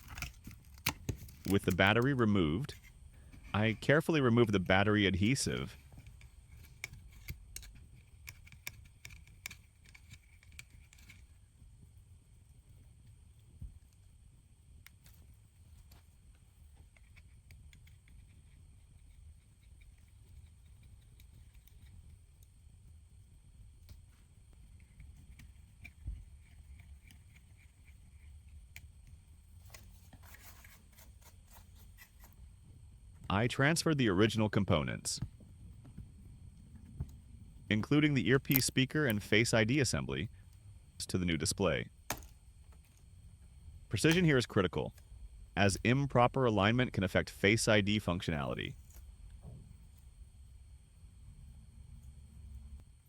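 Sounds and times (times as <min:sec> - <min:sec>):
small hand tool clicking and scraping: 0:05.5 - 0:11.3.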